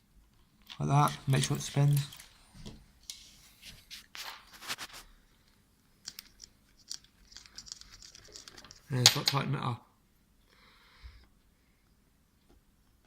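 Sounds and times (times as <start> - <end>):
hands handling plastic wheel: 0.6 - 5.0.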